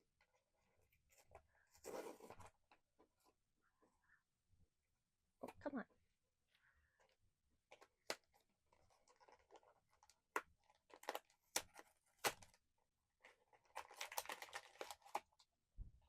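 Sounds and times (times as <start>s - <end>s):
wrapper crinkling and tearing: 7.7s - 12.6s, 13.2s - 15.4s.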